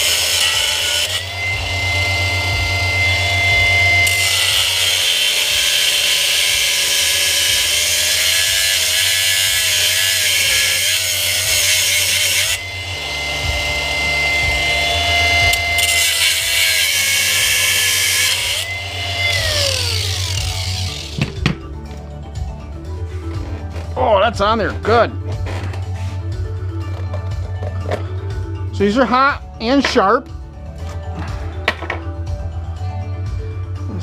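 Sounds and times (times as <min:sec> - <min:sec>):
angle grinder cutting metal: 0:00.0 - 0:21.5.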